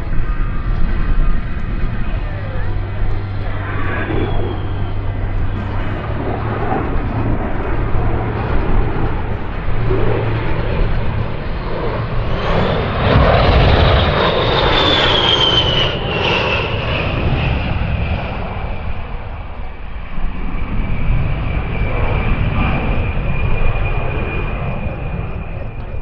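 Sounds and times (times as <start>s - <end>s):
high jet engine whine: 0.0s - 26.0s
jet flying past: 0.0s - 26.0s.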